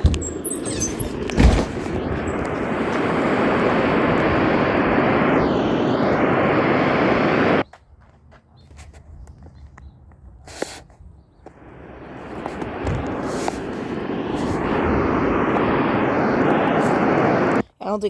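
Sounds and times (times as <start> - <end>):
radio static hiss: 0.0 - 7.6, 11.5 - 17.6.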